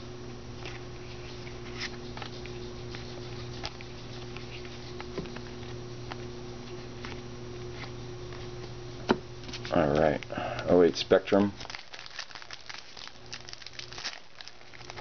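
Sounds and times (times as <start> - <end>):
low electrical hum: 0.0 - 15.0
trading cards shuffled by hand: 0.6 - 8.5, 11.3 - 15.0.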